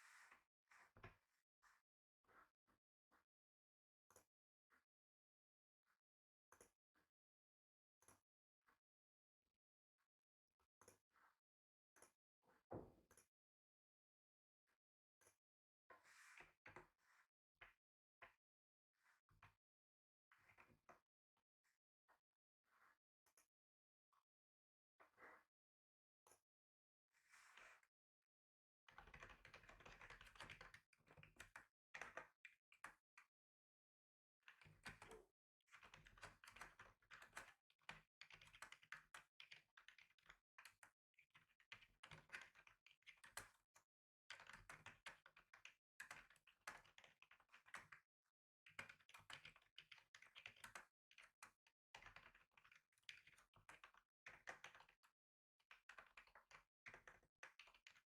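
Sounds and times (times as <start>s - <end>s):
typing on computer keyboard: 29.0s - 32.4s, 35.8s - 43.6s, 44.3s - 48.0s, 48.7s - 55.0s.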